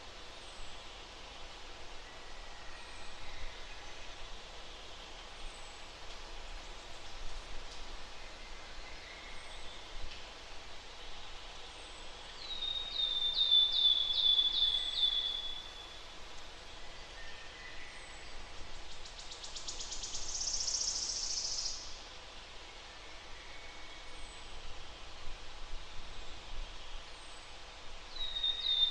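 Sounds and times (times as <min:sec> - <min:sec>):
background hiss: 0:00.0 - 0:28.9.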